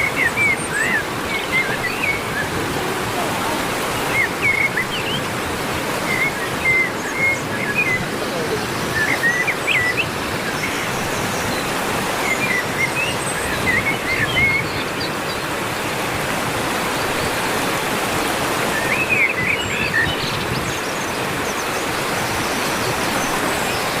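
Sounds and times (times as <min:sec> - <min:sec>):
waterfall rushing: 0:00.0 - 0:24.0
bird chirping: 0:03.8 - 0:05.4, 0:06.0 - 0:15.4.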